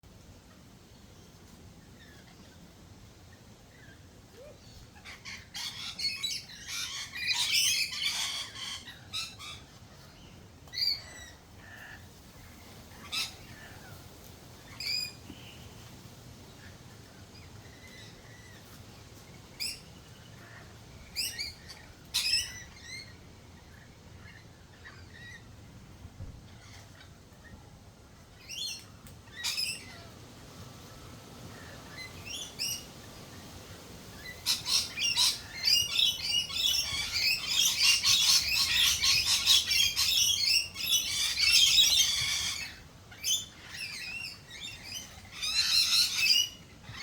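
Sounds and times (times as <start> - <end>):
birds squawking: 34.2 - 47.0.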